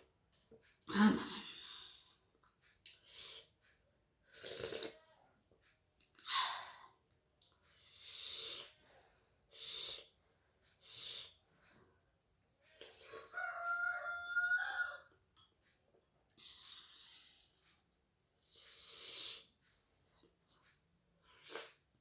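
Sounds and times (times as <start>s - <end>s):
person eating with breathy hisses: 2.9s - 3.6s, 4.2s - 5.0s, 7.7s - 11.4s, 18.4s - 19.6s, 21.2s - 21.9s.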